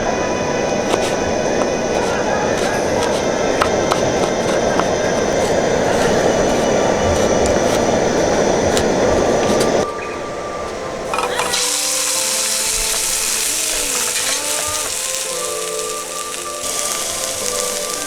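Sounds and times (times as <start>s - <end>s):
steady rushing noise: 0.0s - 11.3s
soft background music: 0.0s - 18.0s
food sizzling in a pan: 11.1s - 18.0s.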